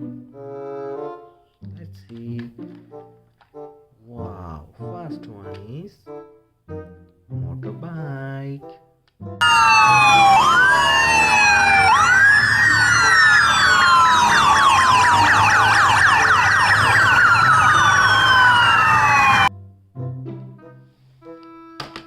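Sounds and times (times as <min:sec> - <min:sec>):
electronic siren wailing: 0:09.4 - 0:19.5.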